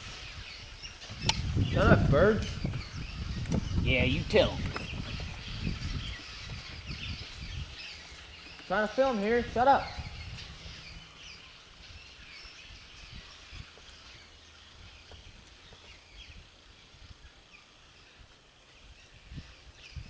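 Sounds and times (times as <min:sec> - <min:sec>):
birds chirping: 0:00.0 - 0:20.0
low rumble of wind: 0:00.0 - 0:20.0.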